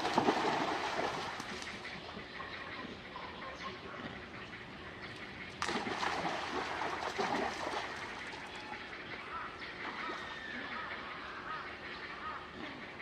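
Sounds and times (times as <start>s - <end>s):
water splashing and trickling: 0.0s - 2.1s, 5.5s - 8.9s.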